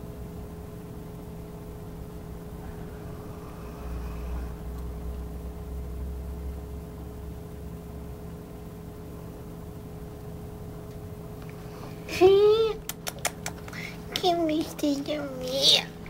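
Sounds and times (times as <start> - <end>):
steady electrical hum: 0.0 - 16.0
dog snoring: 2.6 - 5.0.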